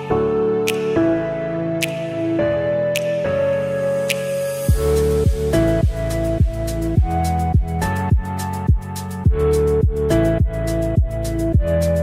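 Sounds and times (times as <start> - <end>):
held synth chords: 0.0 - 12.0
deep kick drum beating: 4.7 - 11.8.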